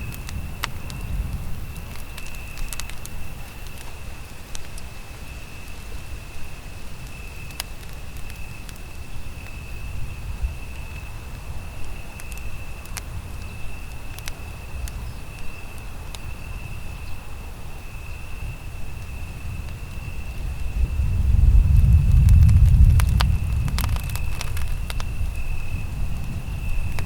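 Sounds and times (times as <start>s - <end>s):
campfire crackling: 0.0s - 27.0s
low rumble: 20.2s - 27.0s
sharp pops of fire: 21.7s - 25.6s.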